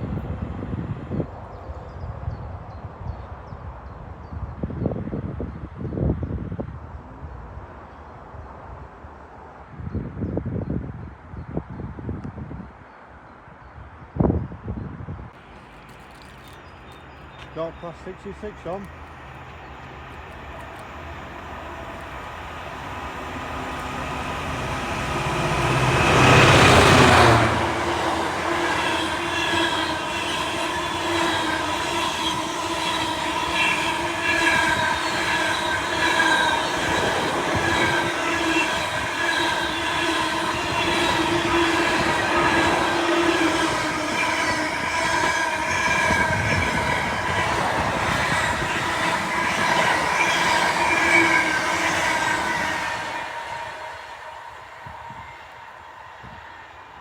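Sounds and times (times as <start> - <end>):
diesel locomotive passing: 15.3 - 57.0
wheels squealing: 18.9 - 56.4.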